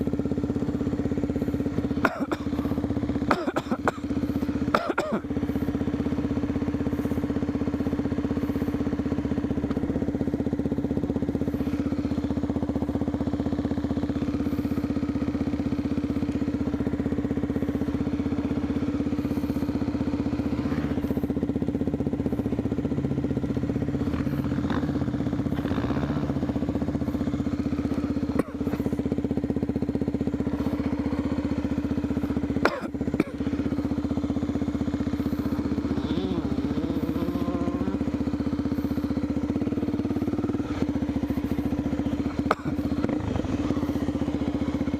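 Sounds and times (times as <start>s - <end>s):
motorcycle engine idling: 0.0s - 44.9s.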